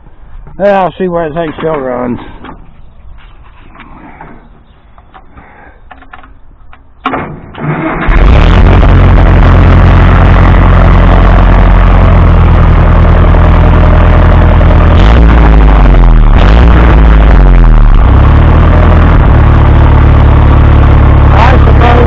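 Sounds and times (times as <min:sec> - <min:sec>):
tractor engine cranking: 0:05.0 - 0:22.0
tractor engine running: 0:05.9 - 0:22.0.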